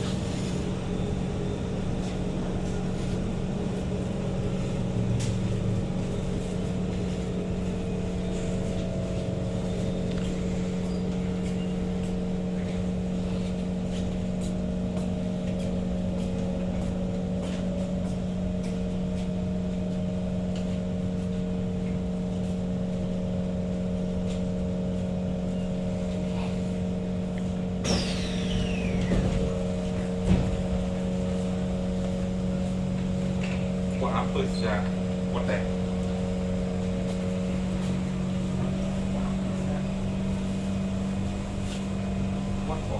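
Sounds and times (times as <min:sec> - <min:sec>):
train interior drone: 0:00.0 - 0:42.9
train braking whine: 0:09.4 - 0:12.0, 0:27.8 - 0:31.2.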